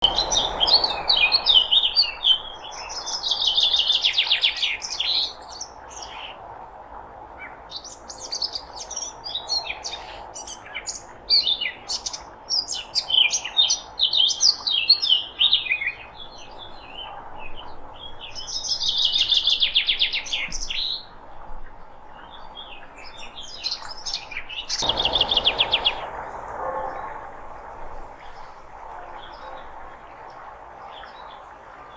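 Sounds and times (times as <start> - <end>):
songbirds chirping: 0.0 - 6.5, 7.3 - 31.9
bird trills: 23.0 - 27.2.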